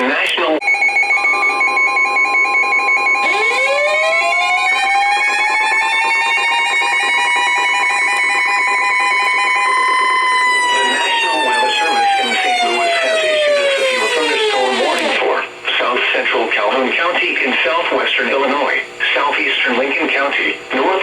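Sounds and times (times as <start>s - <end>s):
pulsing two-tone alarm: 0.6s - 15.2s
siren winding up: 0.6s - 15.2s.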